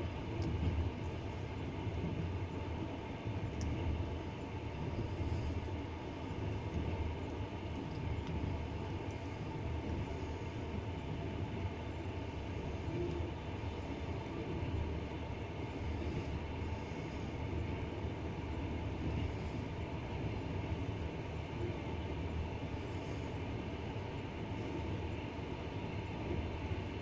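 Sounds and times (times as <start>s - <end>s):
train wheels rumbling on rails: 0.0s - 27.0s.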